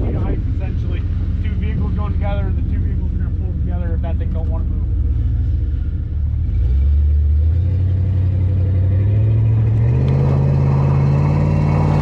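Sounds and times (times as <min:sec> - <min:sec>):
vehicle engine revving under load: 0:04.9 - 0:12.0.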